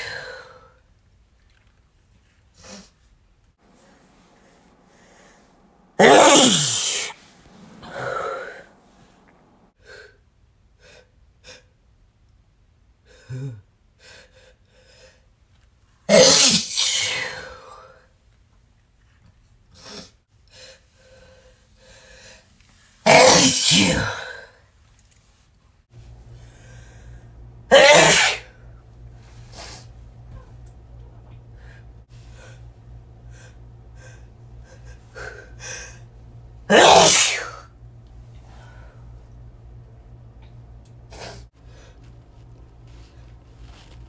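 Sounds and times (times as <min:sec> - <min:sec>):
steady low hum: 0:00.0 - 0:13.3, 0:20.4 - 0:44.0
person sneezing: 0:06.0 - 0:07.2, 0:16.1 - 0:17.6, 0:23.1 - 0:24.4, 0:27.7 - 0:28.5, 0:36.7 - 0:37.7.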